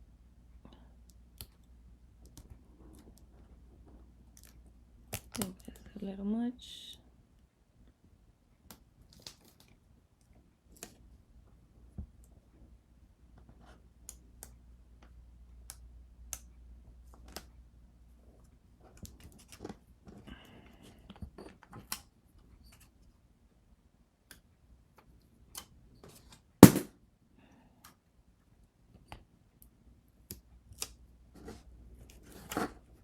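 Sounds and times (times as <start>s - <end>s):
sharp knock: 26.6s - 26.9s.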